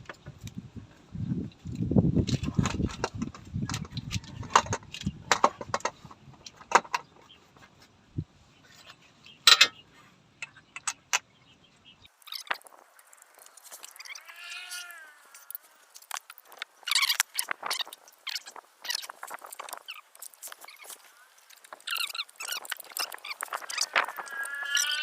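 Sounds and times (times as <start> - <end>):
metal tools clinking on metal: 9.5 - 9.8.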